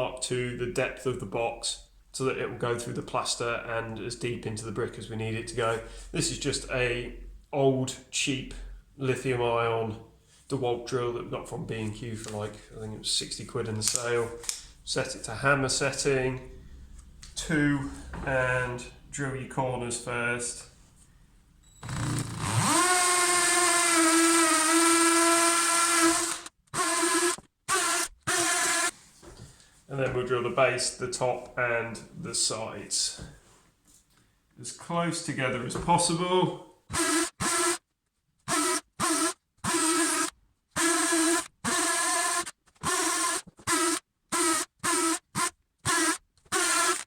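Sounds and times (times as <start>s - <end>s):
hammer drill boring into brick: 21.8s - 28.9s, 36.9s - 37.8s, 38.5s - 47.0s.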